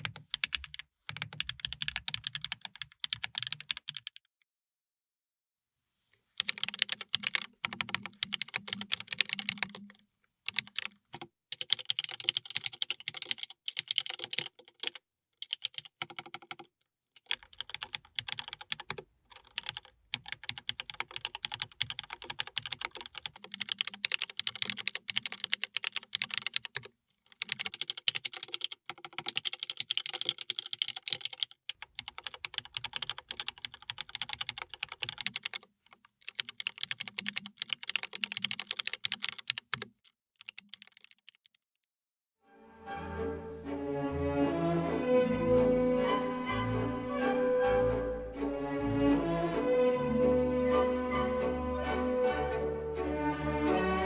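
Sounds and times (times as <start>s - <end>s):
mechanical keyboard typing: 0.0s - 4.2s, 6.4s - 16.7s, 17.3s - 41.5s.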